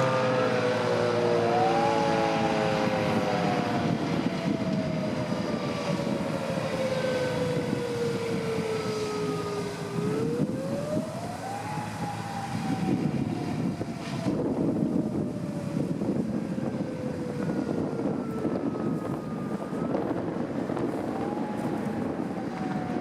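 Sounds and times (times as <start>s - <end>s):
mechanical warning siren: 0.0s - 23.0s.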